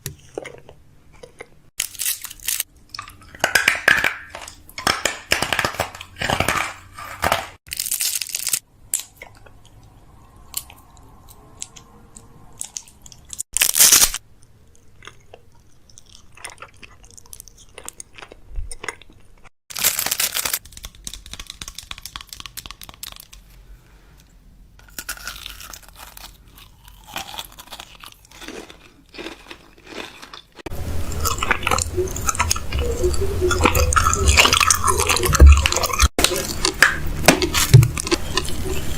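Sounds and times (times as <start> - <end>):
packaging crinkling and rustling: 19.7 - 23.6.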